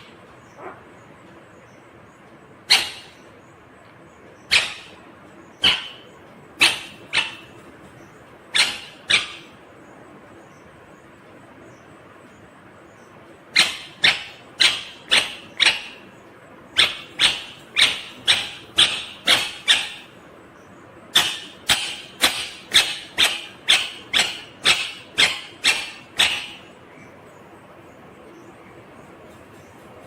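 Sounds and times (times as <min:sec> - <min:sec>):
parrot squawking: 0:02.7 - 0:03.3, 0:04.4 - 0:07.7, 0:08.5 - 0:09.6, 0:13.5 - 0:16.1, 0:16.7 - 0:20.2, 0:21.1 - 0:27.1.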